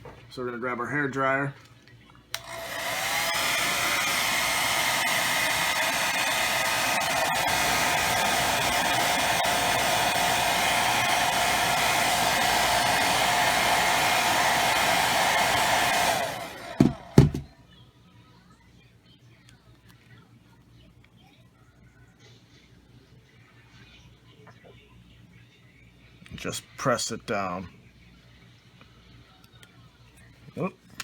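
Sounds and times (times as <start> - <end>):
hair dryer switch click: 2.4 - 17.4
hair dryer blowing: 2.4 - 17.6.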